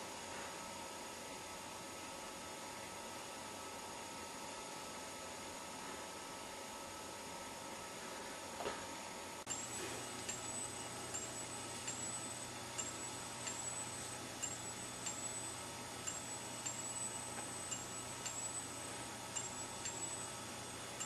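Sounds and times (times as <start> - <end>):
steady electrical hum: 0.0 - 21.0
strobe clicks and rising whines: 9.3 - 21.0.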